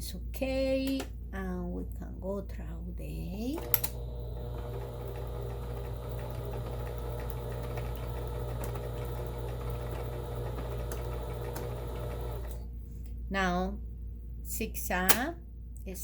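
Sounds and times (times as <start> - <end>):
sewing machine running: 3.6 - 12.7.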